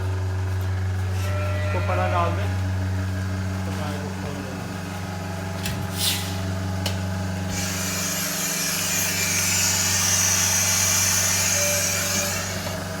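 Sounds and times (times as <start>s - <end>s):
engine idling: 2.1s - 13.0s
hiss: 6.0s - 6.4s.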